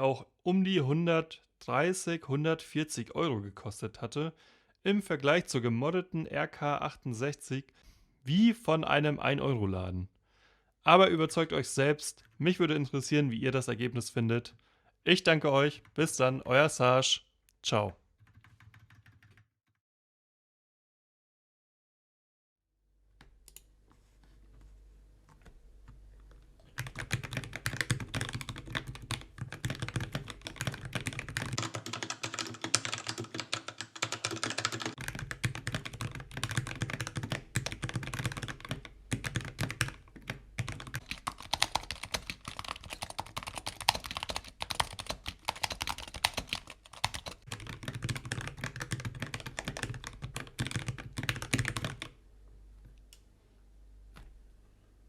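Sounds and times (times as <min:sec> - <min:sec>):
mechanical keyboard typing: 0:18.2 - 0:19.4, 0:26.7 - 0:52.1.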